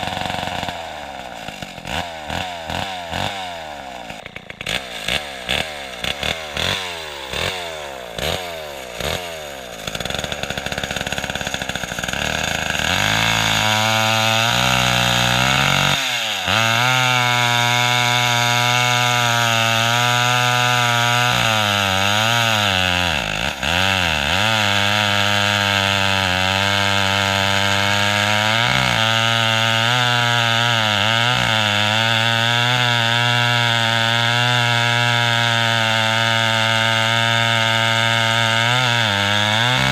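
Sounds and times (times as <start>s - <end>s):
chainsaw engine running: 0.0s - 39.9s
chainsaw pull-start pulls: 0.0s - 39.9s.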